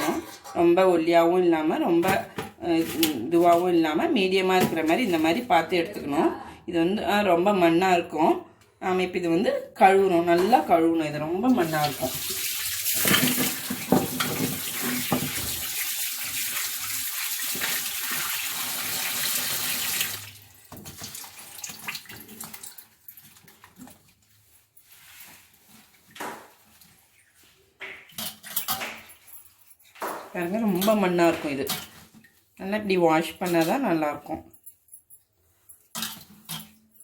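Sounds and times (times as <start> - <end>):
tap water running into sink: 11.6 - 22.9.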